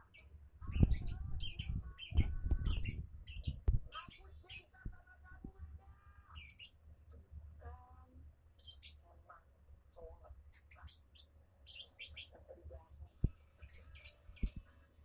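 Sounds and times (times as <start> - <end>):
lovebird chirps and squawks: 0.0 - 4.8, 6.3 - 6.8, 8.6 - 9.0, 10.5 - 12.3, 13.6 - 14.6
dull low bumps: 0.9 - 3.9.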